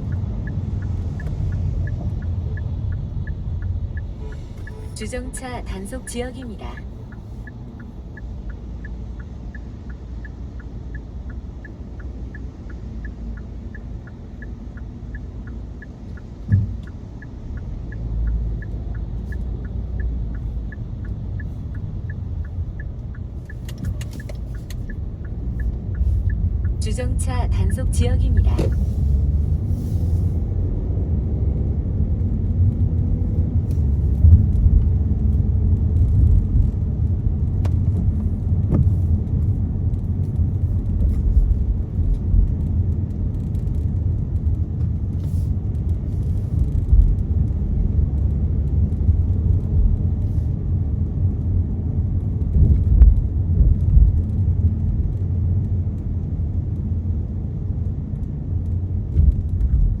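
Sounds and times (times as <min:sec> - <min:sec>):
faint ticks: 0:00.0 - 0:04.9, 0:06.8 - 0:26.8
car engine and tyre rumble: 0:00.0 - 1:00.0.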